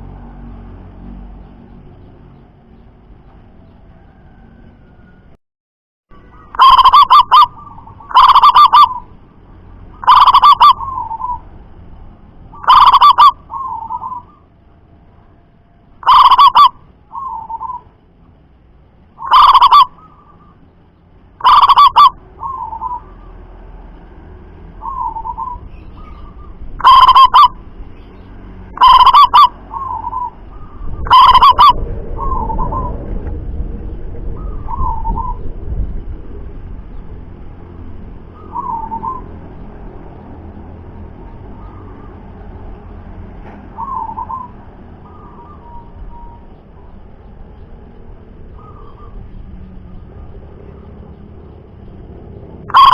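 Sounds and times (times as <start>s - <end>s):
low background rumble: 6.1s - 52.9s
doves cooing: 6.4s - 9.1s, 10.0s - 11.5s, 12.6s - 14.5s, 16.0s - 17.9s, 19.2s - 20.6s, 21.4s - 23.3s, 24.8s - 27.6s, 28.7s - 35.6s, 38.3s - 40.2s, 43.7s - 47.1s, 48.4s - 51.4s, 52.4s - 52.9s.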